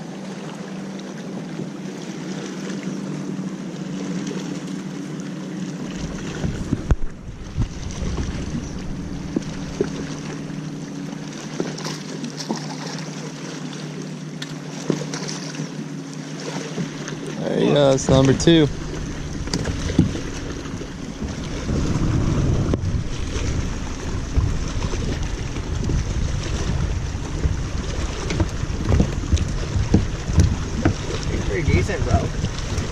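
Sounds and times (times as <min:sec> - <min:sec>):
boat motor humming: 0:00.0 - 0:32.9
wind buffeting microphone: 0:05.8 - 0:11.2, 0:17.4 - 0:32.9.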